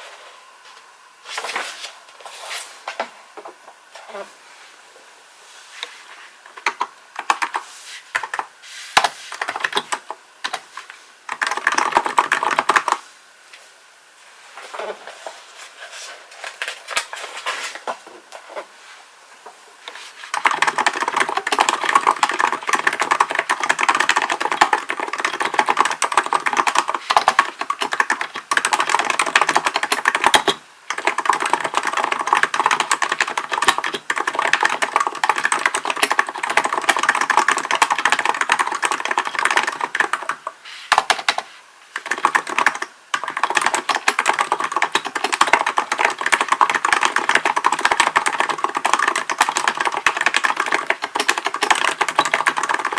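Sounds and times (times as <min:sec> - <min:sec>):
keyboard typing: 0:06.6 - 0:10.6, 0:11.3 - 0:13.0, 0:20.3 - 0:52.9.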